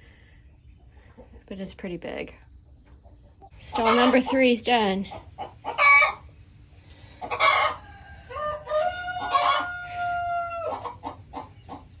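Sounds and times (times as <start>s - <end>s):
chickens calling: 2.7s - 12.0s
rooster crowing: 7.3s - 11.0s.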